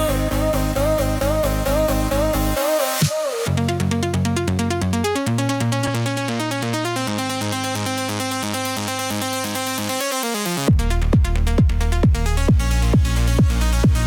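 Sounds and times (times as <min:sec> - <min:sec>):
held bass line: 0:00.0 - 0:02.6, 0:10.7 - 0:14.0
synthesizer arpeggio: 0:00.0 - 0:14.0
heavy kick drums: 0:10.7 - 0:14.0.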